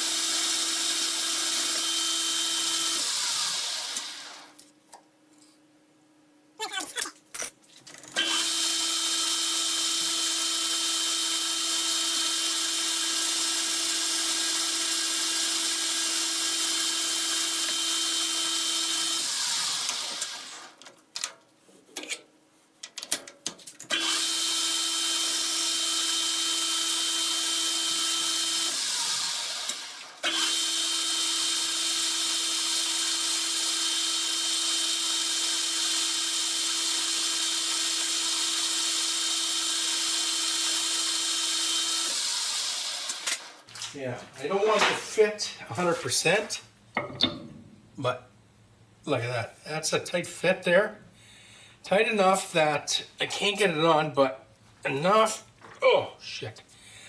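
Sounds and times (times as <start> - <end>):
metal lathe whining: 8.2 - 20.7, 23.9 - 43.5.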